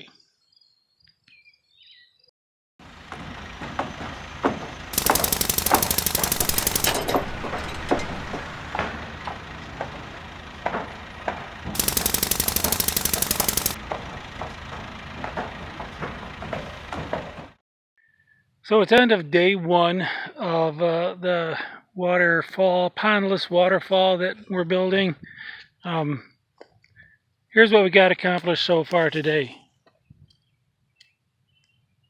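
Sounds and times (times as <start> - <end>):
power hammer pounding: 4.9 - 17.5.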